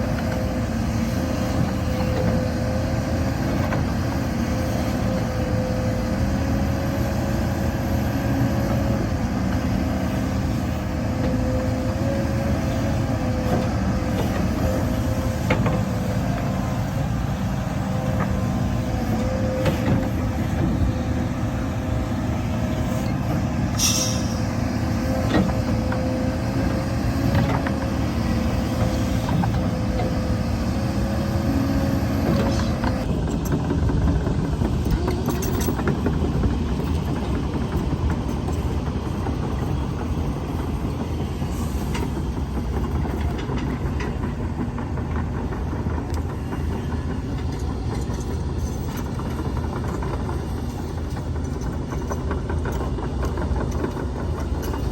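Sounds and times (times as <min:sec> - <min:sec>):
diesel machinery droning: 0:00.0 - 0:54.9
short hiss: 0:23.8 - 0:24.4.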